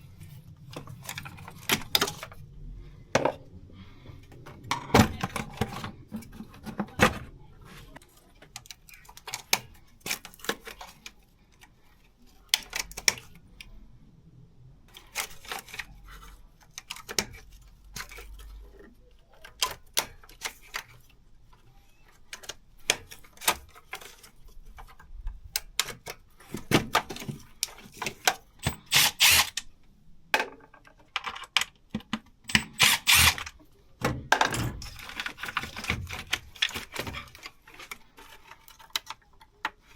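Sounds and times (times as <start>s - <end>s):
quick ratchet-like clicks: 28.6s - 29.6s, 32.5s - 33.5s.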